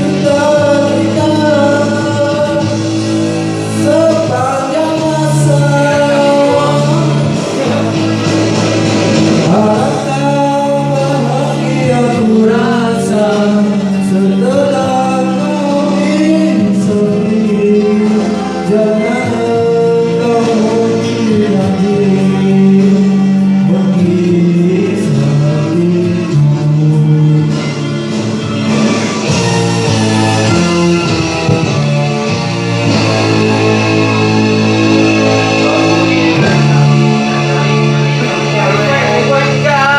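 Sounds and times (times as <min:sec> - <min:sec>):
person singing: 0:00.0 - 0:02.9, 0:03.6 - 0:08.7, 0:09.4 - 0:27.9, 0:35.0 - 0:39.9
pop ballad backing track: 0:00.0 - 0:39.9.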